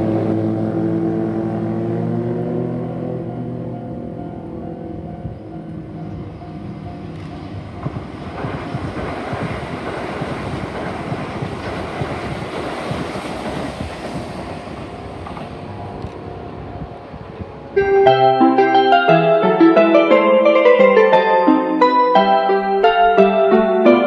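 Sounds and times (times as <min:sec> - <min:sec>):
electric train passing: 0:00.0 - 0:24.0
wheels clattering over rail joints: 0:05.3 - 0:16.4.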